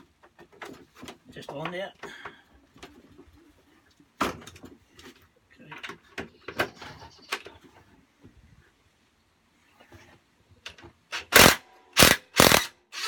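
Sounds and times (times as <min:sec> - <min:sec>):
rasping hand tool bursts: 0:11.2 - 0:13.0.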